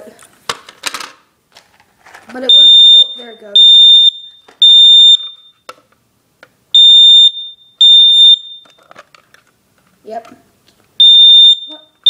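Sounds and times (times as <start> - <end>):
smoke alarm beeping: 2.5 - 5.7, 6.7 - 8.8, 11.0 - 12.0.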